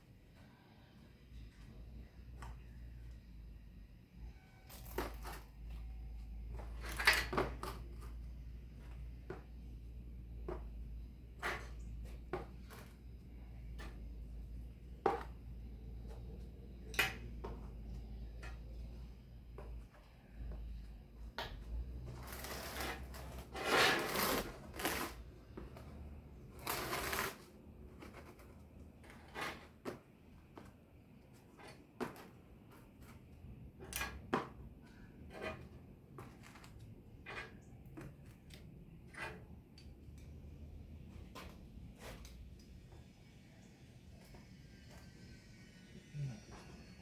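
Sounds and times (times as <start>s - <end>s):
rasping scrapes: 22.2s - 25.2s, 26.6s - 27.5s.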